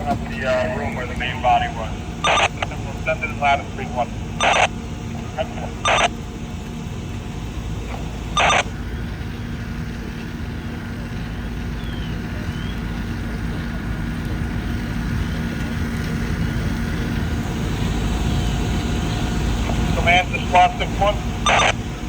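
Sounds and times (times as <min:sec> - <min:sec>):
faint steady hum: 0:00.0 - 0:22.0
heavy vehicle engine rumble: 0:00.0 - 0:22.0
radio beep: 0:00.2 - 0:06.2, 0:08.3 - 0:08.7, 0:20.0 - 0:21.8.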